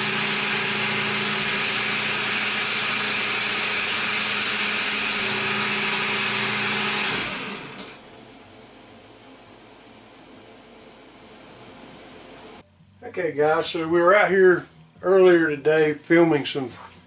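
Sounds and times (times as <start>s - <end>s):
milling machine whine: 0.0s - 8.0s.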